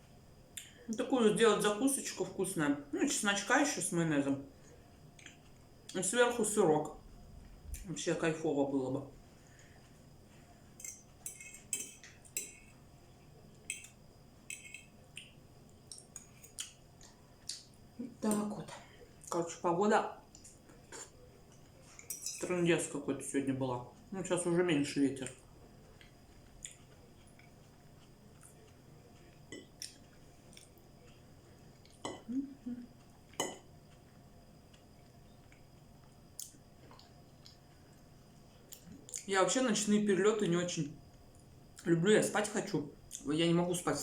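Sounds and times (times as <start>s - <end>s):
faint chewing of food: 4.5s - 6.0s, 9.2s - 18.0s, 20.2s - 22.2s, 25.2s - 39.3s
cutlery scraping a plate: 10.8s - 12.8s, 14.5s - 14.9s
soft mouth clicks and smacks: 36.4s - 37.6s.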